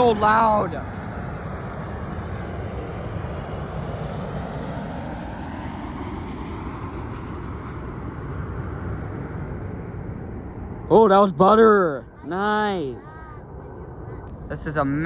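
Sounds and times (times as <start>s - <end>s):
jet airliner passing low: 0.0s - 15.0s.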